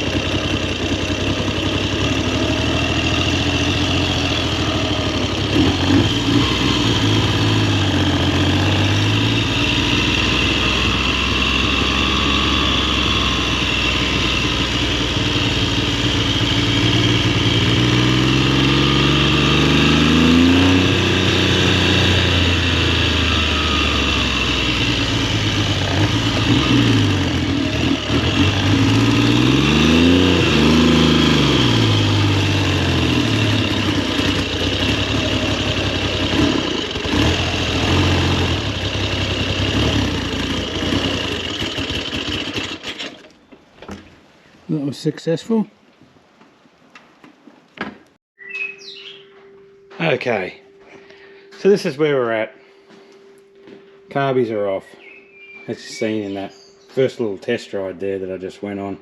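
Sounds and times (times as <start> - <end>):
motorcycle engine revving: 0.0 - 44.0.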